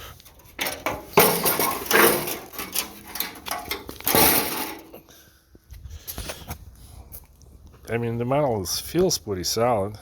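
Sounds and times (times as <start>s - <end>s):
sheet metal scraping and rattling: 0.0s - 5.0s.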